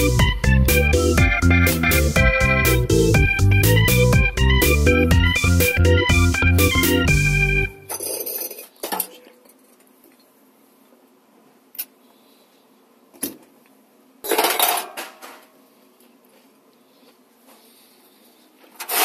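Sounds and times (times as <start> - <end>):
music: 0.0 - 7.9.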